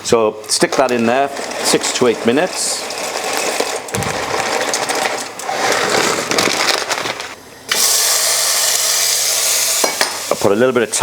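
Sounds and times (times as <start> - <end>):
food clattering in a pan: 0.7 - 7.3
frying sizzle: 8.0 - 11.0.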